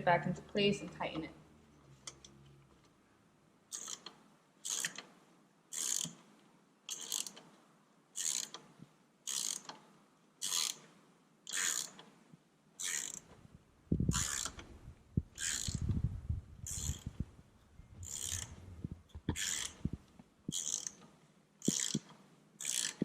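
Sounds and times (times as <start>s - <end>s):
socket ratchet clicking: 3.7s - 5.1s, 5.7s - 6.2s, 6.9s - 7.4s, 8.2s - 8.6s, 9.3s - 9.8s, 10.4s - 10.8s, 11.5s - 12.0s, 12.8s - 13.3s, 14.1s - 14.7s, 15.4s - 15.9s, 16.6s - 17.2s, 18.0s - 18.6s, 19.3s - 19.9s, 20.5s - 21.0s, 21.6s - 23.0s.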